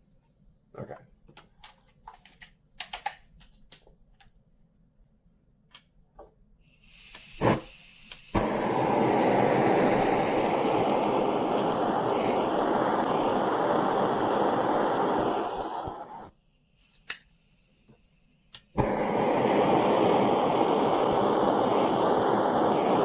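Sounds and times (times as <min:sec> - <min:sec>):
butane torch lighting: 0:06.7 - 0:17.4, 0:18.4 - 0:23.0
torch flame rushing: 0:07.3 - 0:16.3, 0:18.8 - 0:23.0.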